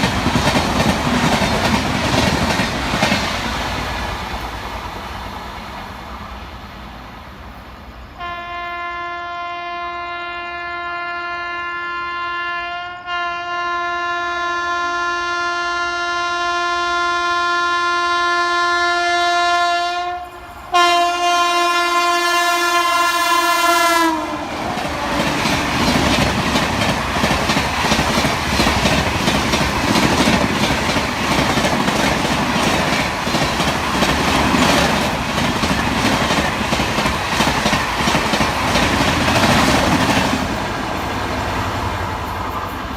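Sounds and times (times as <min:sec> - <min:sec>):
train wheels on rails: 0:00.0 - 0:08.7, 0:19.6 - 0:42.9
locomotive horn: 0:08.2 - 0:25.3.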